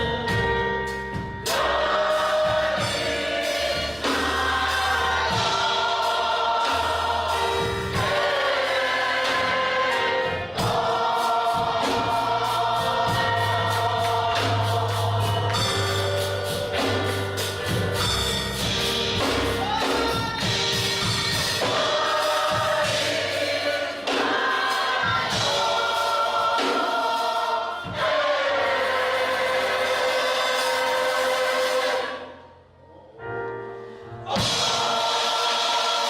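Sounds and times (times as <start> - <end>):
band with bass and drums: 0.0 - 27.0
choir singing held notes: 1.4 - 32.5, 33.2 - 36.0.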